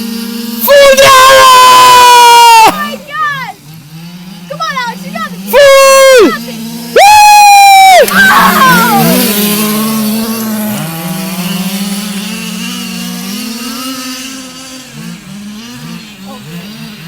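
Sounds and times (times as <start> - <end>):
rc car motor revving: 0.0 - 17.0.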